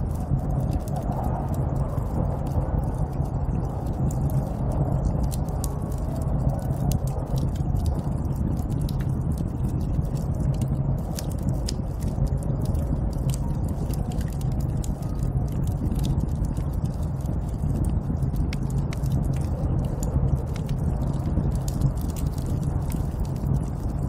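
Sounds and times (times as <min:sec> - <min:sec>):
wind blowing low rumble: 0:00.0 - 0:24.0
sharp crackles: 0:05.2 - 0:24.0.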